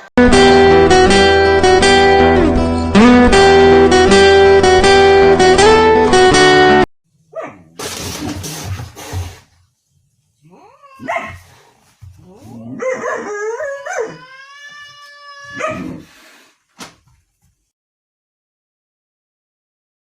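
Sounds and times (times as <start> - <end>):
pet animal howling: 12.3 - 16.1.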